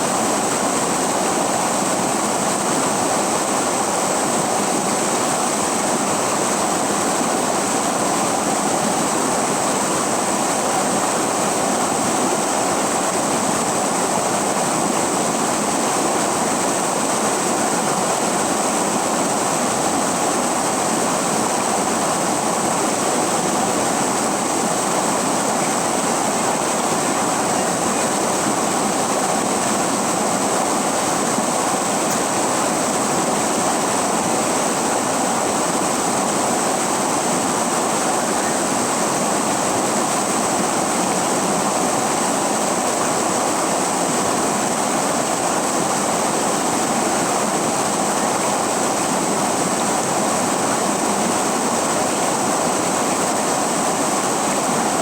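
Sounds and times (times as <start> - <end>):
river water flowing: 0.0 - 55.0.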